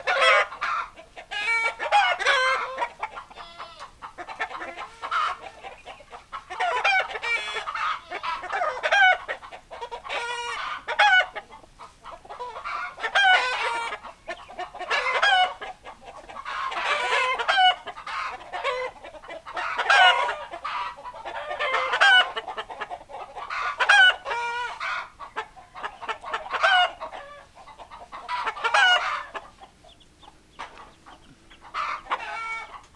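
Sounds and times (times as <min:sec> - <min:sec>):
chickens clucking: 0:00.0 - 0:32.9
rooster crowing: 0:12.8 - 0:14.0, 0:31.0 - 0:32.9.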